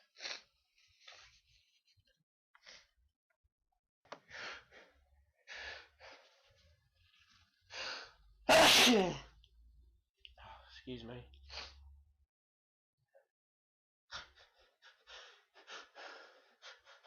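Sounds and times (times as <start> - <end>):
breathy in-breaths: 4.3 - 6.6, 7.7 - 8.2
person sneezing: 8.5 - 9.3.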